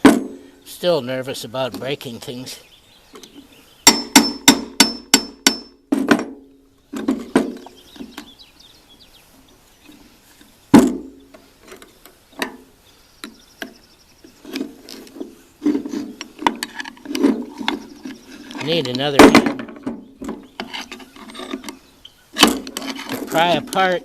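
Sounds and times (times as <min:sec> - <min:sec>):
hammer striking metal shaft: 0:03.9 - 0:05.8.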